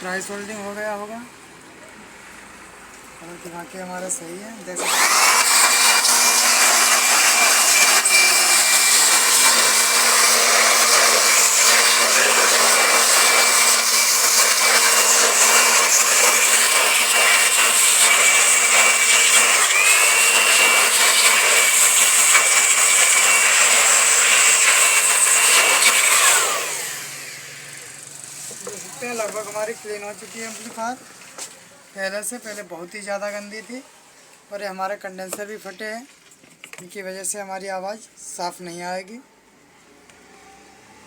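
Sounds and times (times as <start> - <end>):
electric blower whining: 4.8 - 30.7.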